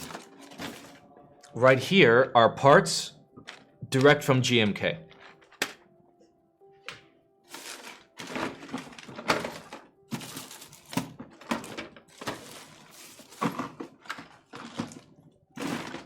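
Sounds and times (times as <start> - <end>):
keyboard parts clacking and rattling: 0.0 - 1.0, 3.4 - 4.1, 5.0 - 5.8, 6.9 - 16.0.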